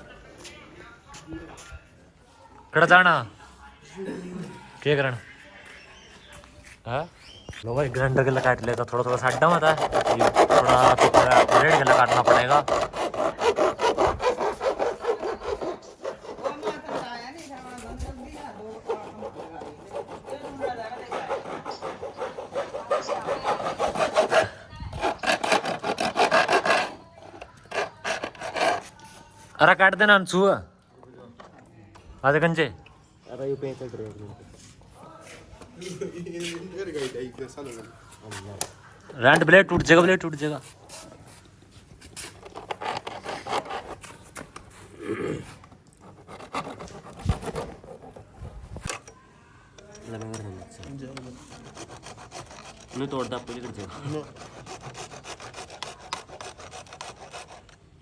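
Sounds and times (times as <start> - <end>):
hand saw cutting: 8.0 - 29.0, 42.2 - 44.1, 45.9 - 48.8, 50.2 - 57.8.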